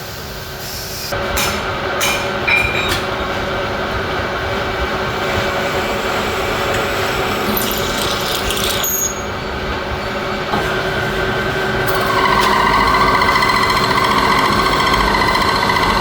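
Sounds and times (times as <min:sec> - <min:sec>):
lathe running: 0:10.6 - 0:16.0.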